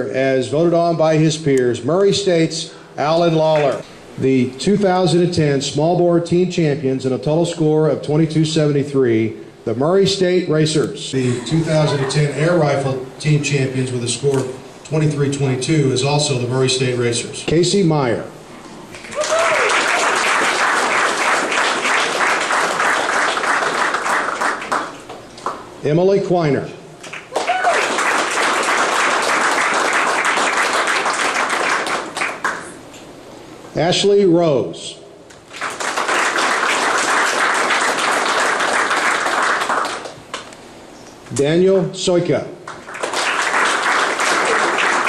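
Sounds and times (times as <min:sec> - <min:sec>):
person whooping: 0:19.0 - 0:20.0, 0:27.3 - 0:28.0
audience applauding: 0:19.0 - 0:25.1, 0:27.1 - 0:32.7, 0:35.5 - 0:40.4, 0:42.7 - 0:45.0.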